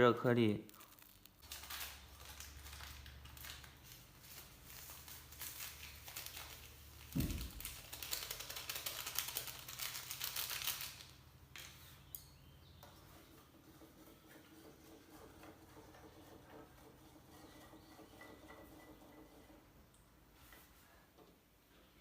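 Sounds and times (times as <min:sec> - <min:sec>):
sachet crinkling: 0:00.4 - 0:11.2
single thump: 0:07.2 - 0:07.6.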